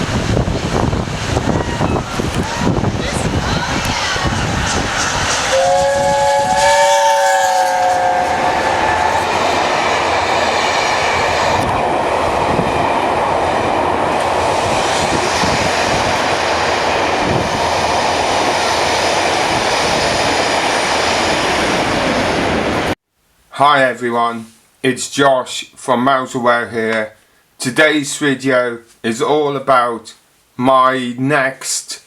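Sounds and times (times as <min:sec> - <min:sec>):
train wheels rumbling on track: 0:00.0 - 0:23.0
train chord horn: 0:05.4 - 0:09.7.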